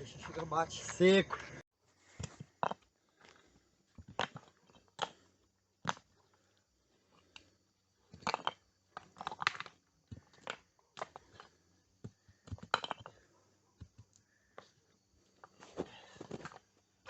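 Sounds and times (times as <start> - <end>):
stones clacking together: 2.2 - 6.4, 8.1 - 14.8, 15.4 - 16.8.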